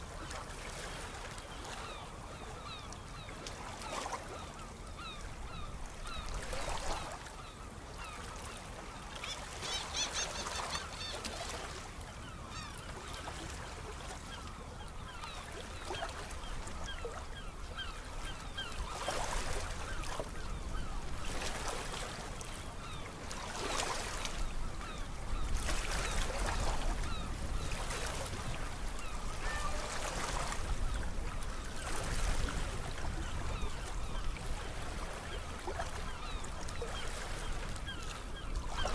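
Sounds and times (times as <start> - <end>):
birds calling: 1.6 - 21.7.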